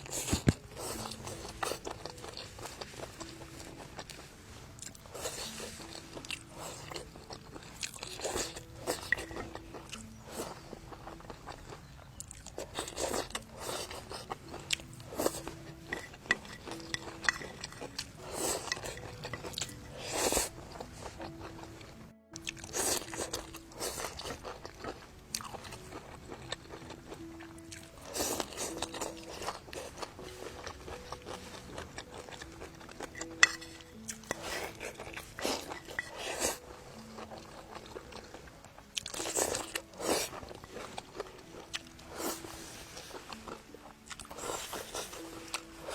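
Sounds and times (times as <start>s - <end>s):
background music with held notes: 0.0s - 45.9s
crisp bites and chewing: 4.8s - 15.4s.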